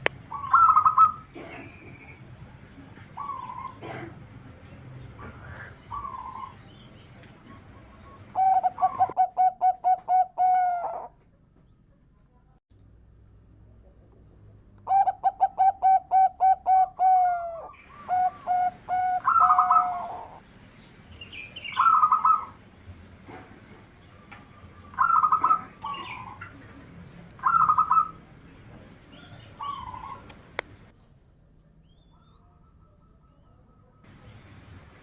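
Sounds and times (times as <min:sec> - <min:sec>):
dove cooing: 0:00.3 - 0:02.2, 0:03.0 - 0:04.3, 0:05.2 - 0:06.6, 0:07.3 - 0:11.2, 0:14.8 - 0:20.4, 0:21.7 - 0:22.6, 0:24.2 - 0:26.8, 0:27.4 - 0:28.3, 0:29.1 - 0:30.6.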